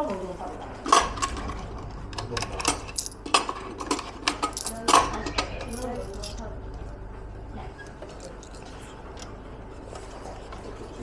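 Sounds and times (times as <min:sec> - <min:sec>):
coins clinking in vending machine: 0:02.4 - 0:06.5, 0:08.1 - 0:08.6.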